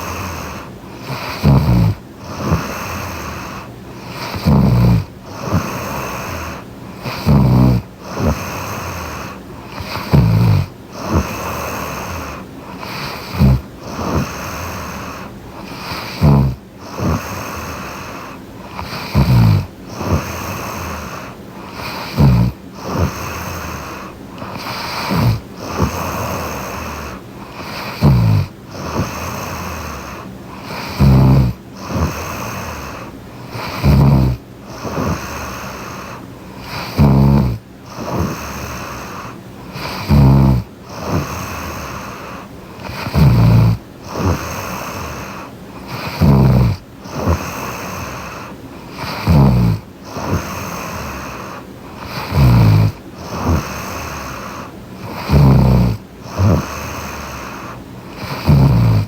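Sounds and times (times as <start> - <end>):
soft breathing: 0.0 - 59.0
woman snoring: 0.0 - 59.0.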